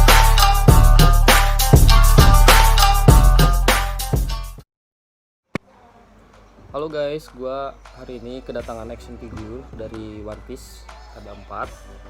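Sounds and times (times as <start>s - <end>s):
drum beat: 0.0s - 4.6s
sustained bass line: 0.0s - 4.6s.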